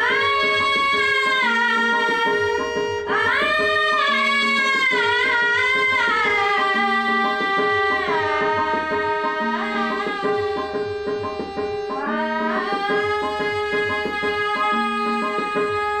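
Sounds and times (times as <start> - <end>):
tabla strokes: 0.0 - 16.0.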